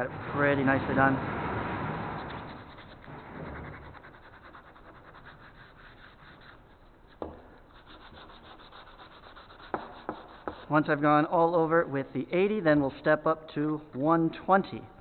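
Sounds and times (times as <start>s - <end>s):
sandpaper rubbing on wood: 2.0s - 11.0s.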